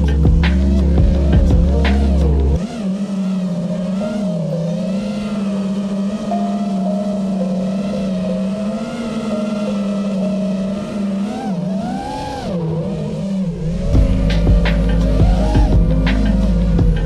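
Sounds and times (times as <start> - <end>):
heavy bass music beat: 0.0 - 2.6, 13.9 - 17.0
drone motors whining: 0.0 - 17.0.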